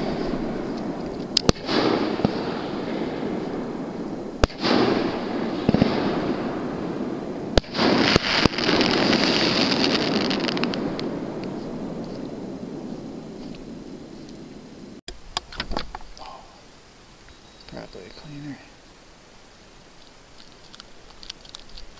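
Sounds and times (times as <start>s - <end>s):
drawn-out crackle: 0.0s - 6.5s, 7.6s - 16.5s, 17.1s - 21.9s
fireworks bangs: 0.0s - 16.2s.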